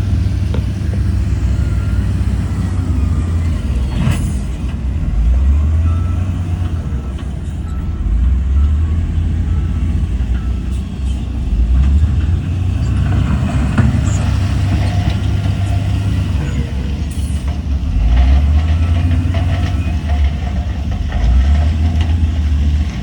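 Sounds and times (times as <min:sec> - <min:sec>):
diesel engines rumbling: 0:00.0 - 0:23.0.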